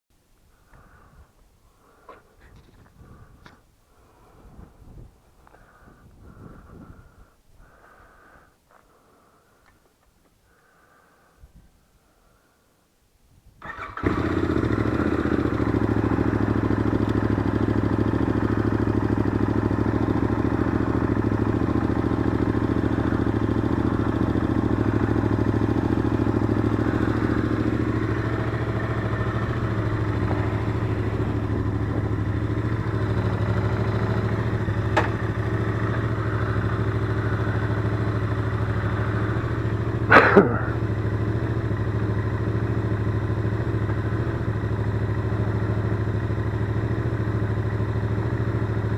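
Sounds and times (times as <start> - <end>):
motorcycle engine idling: 0.5 - 3.8, 13.6 - 48.9
faint click: 9.6 - 10.4, 17.0 - 17.2.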